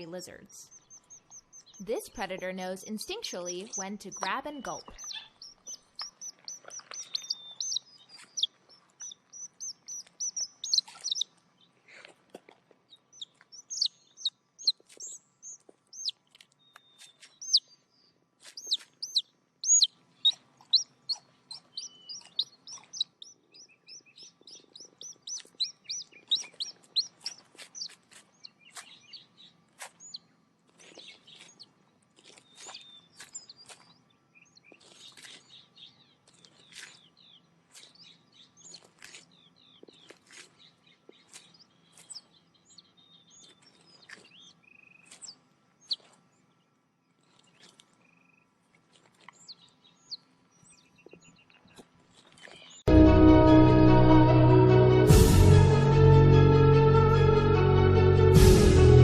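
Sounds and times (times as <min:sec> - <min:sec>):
chicks peeping: 0:00.0 - 0:12.2, 0:12.9 - 0:17.8, 0:18.4 - 0:46.2.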